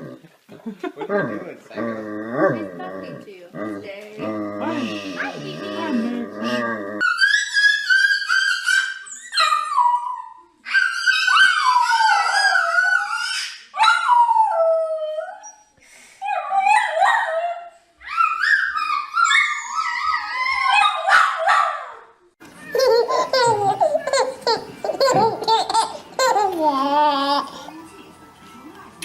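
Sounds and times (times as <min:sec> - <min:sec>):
dog howling: 0:04.2 - 0:15.5.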